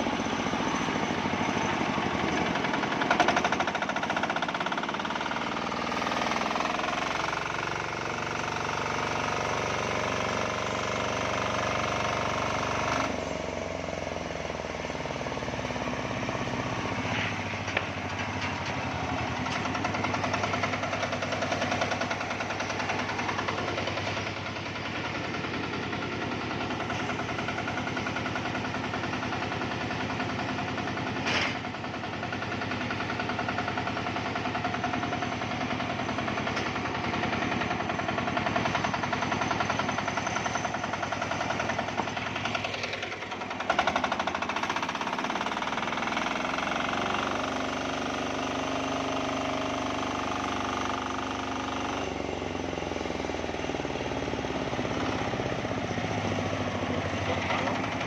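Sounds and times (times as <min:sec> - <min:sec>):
diesel engine knocking: 0:00.0 - 0:58.0.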